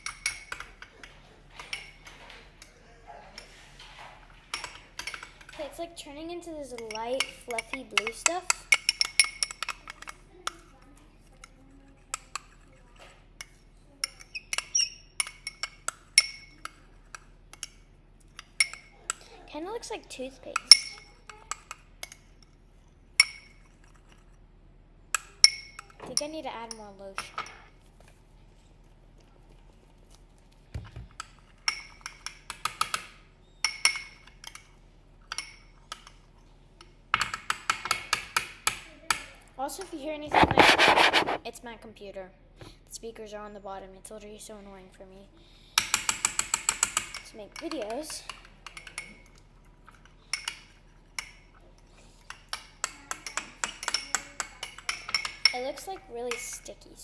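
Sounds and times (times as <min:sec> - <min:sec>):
spoon clinking against bowl: 0:52.5 - 0:55.6.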